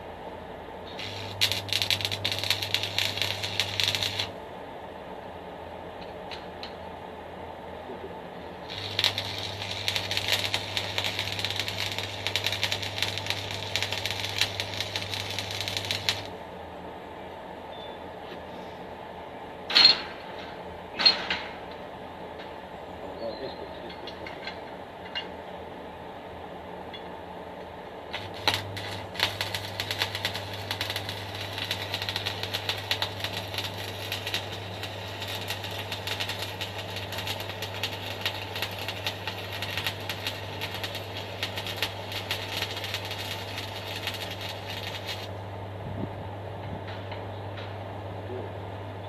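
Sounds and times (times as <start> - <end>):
arc welding crackling and sizzling: 0.0 - 4.7, 8.3 - 16.6, 27.6 - 47.7
low hum: 0.0 - 6.8, 7.8 - 17.4, 28.0 - 48.7.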